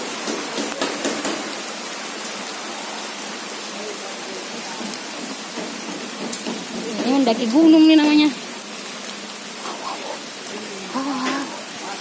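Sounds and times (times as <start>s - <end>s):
falling water hissing: 0.0s - 12.0s
faint voices: 9.6s - 12.0s.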